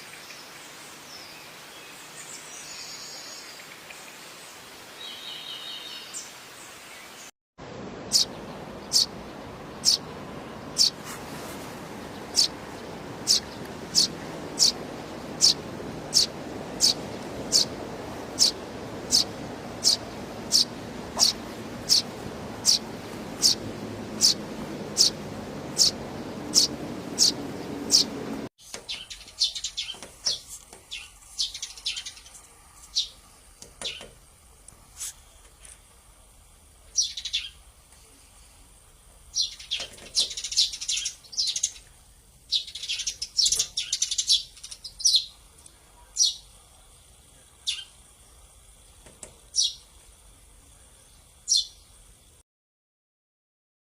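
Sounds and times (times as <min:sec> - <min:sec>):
sparrows chirping: 0:08.1 - 0:11.1, 0:12.0 - 0:33.2, 0:37.0 - 0:37.6, 0:39.4 - 0:41.9, 0:42.5 - 0:45.4, 0:46.1 - 0:46.4, 0:47.6 - 0:47.9, 0:49.6 - 0:49.8, 0:51.2 - 0:51.8
noisy background: 0:12.1 - 0:28.5.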